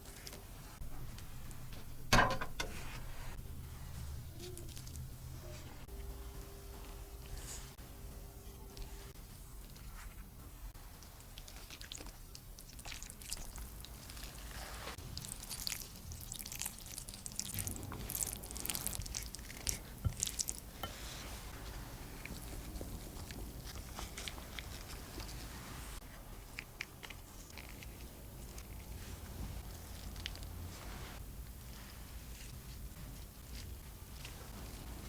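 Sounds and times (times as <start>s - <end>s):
crisp crackly food sounds: 4.3s - 5.9s, 8.6s - 30.8s.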